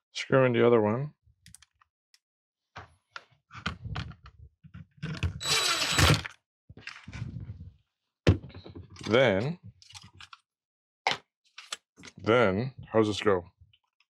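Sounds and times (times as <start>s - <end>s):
power drill whining: 5.4s - 6.3s.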